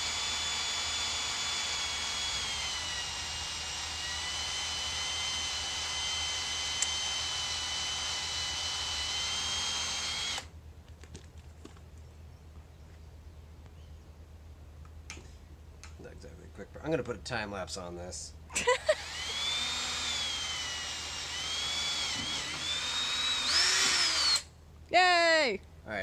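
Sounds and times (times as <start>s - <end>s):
cordless drill whining: 0.0s - 10.5s, 18.6s - 24.5s.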